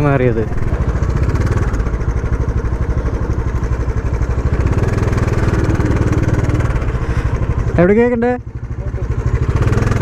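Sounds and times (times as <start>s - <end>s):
motorcycle engine running: 0.0s - 10.0s.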